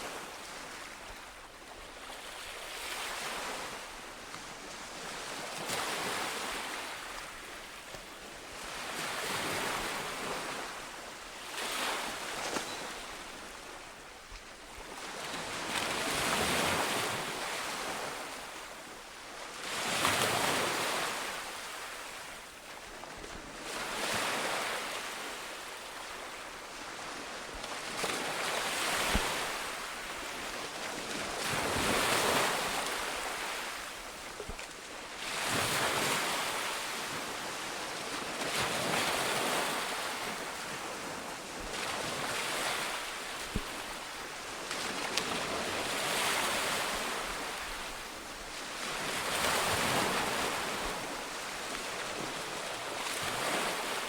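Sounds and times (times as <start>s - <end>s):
sea waves breaking on shore: 0.0s - 18.9s, 23.4s - 54.0s
wind: 0.0s - 54.0s.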